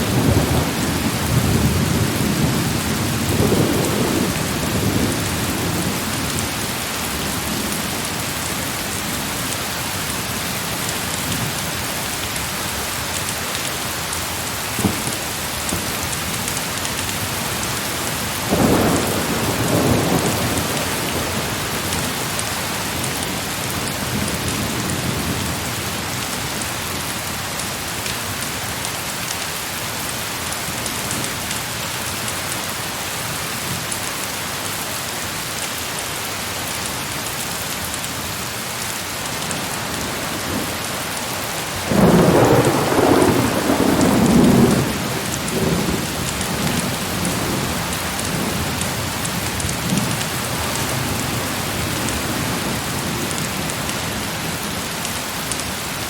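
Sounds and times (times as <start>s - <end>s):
thunderclap and rumbles: 0.0s - 8.4s, 14.6s - 26.3s, 39.4s - 54.8s
heavy rain falling: 0.0s - 56.0s.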